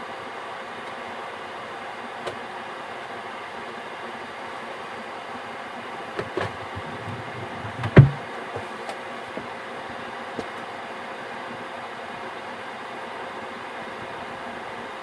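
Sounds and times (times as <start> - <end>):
heater blower fan running: 5.8 - 8.2.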